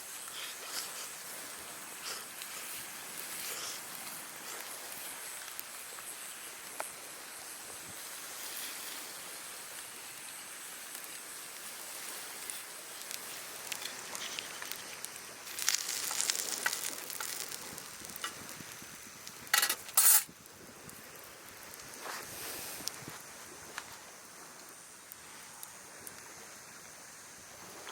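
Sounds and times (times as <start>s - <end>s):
food sizzling in a cup: 11.6s - 20.3s.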